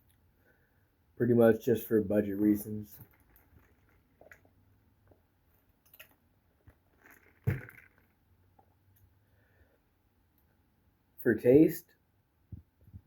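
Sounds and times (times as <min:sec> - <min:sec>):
short thump: 0:07.4 - 0:07.9.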